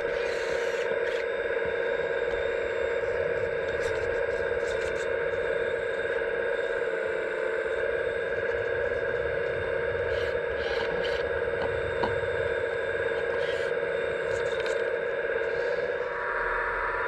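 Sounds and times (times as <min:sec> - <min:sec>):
hydraulic pump whine: 0:00.0 - 0:17.0.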